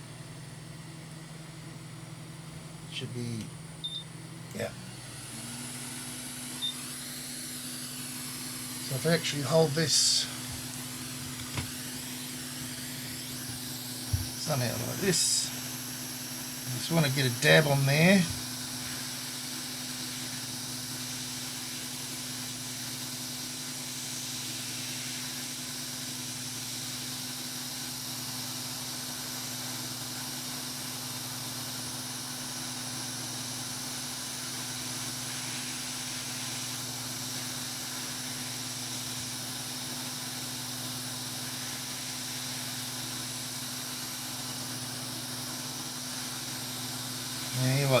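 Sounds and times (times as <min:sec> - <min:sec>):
steady hiss: 0:06.1 - 0:31.2, 0:33.7 - 0:48.0.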